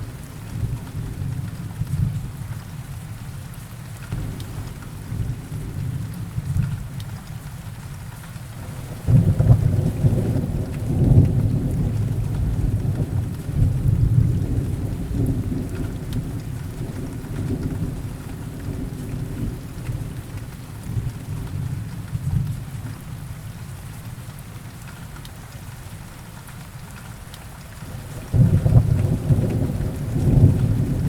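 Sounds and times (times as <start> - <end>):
steady rain: 0.0 - 31.0
rolling thunder: 8.6 - 20.3, 27.9 - 31.0.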